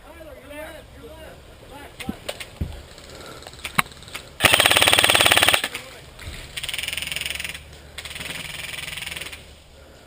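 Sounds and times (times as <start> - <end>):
airsoft guns firing bursts: 4.4 - 5.8, 6.6 - 9.5.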